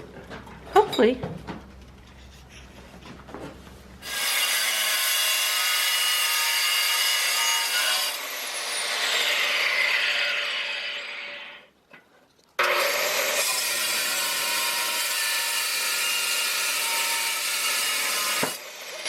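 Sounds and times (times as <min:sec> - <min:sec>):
bandsaw cutting steel rod: 0:04.0 - 0:11.7, 0:12.6 - 0:19.0.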